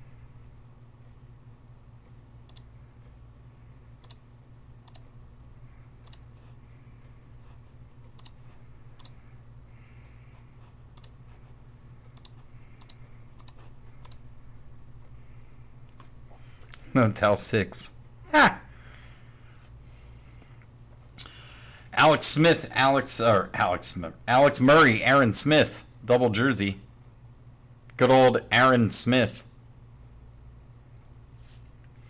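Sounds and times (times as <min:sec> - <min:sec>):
steady low hum: 0:00.0 - 0:32.0
sharp clicks: 0:02.4 - 0:02.7, 0:04.0 - 0:04.2, 0:04.8 - 0:05.2, 0:06.0 - 0:06.3, 0:08.1 - 0:08.4, 0:09.0 - 0:09.2, 0:10.9 - 0:11.2, 0:12.1 - 0:14.2.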